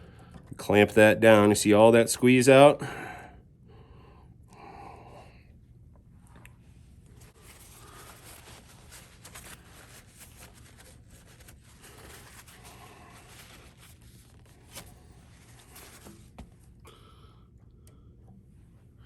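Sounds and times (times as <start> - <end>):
handling noise rustling and scraping: 6.6 - 16.8.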